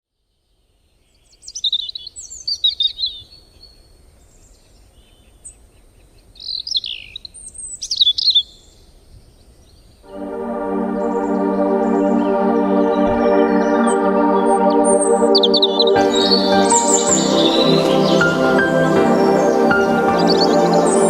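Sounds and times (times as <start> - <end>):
songbird singing: 12.7 - 21.0.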